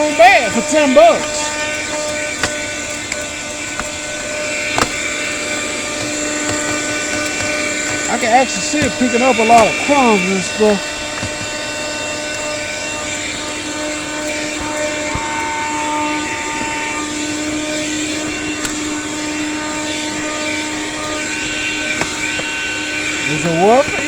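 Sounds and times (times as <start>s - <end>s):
portable vacuum cleaner running: 0.0s - 24.0s.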